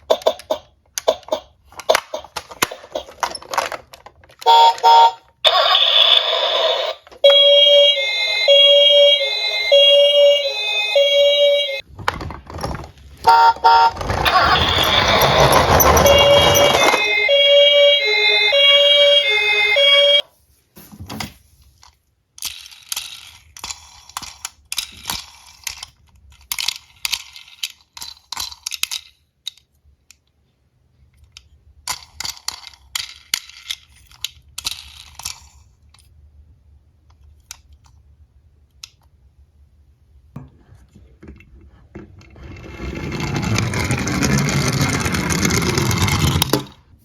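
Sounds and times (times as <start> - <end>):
toy cars clicking and rattling: 0.0 - 7.2, 12.1 - 17.1, 21.8 - 30.4, 31.0 - 36.3, 36.9 - 39.2, 42.2 - 46.8
toy two-tone siren: 4.4 - 11.8, 13.3 - 20.2.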